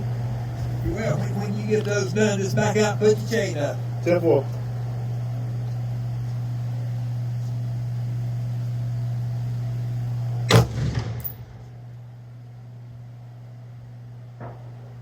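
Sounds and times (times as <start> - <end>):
steady low hum: 0.0 - 15.0
sharp bang: 10.5 - 11.6.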